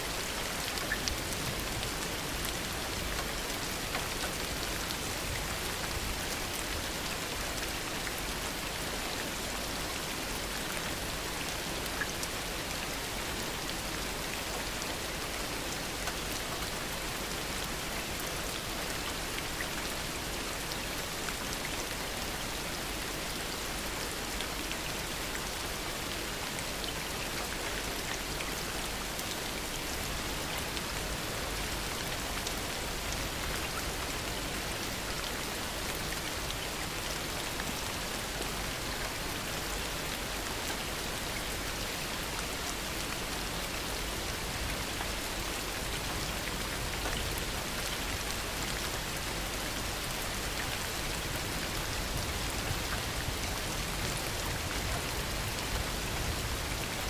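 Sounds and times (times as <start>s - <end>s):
heavy rain falling: 27.5s - 57.0s.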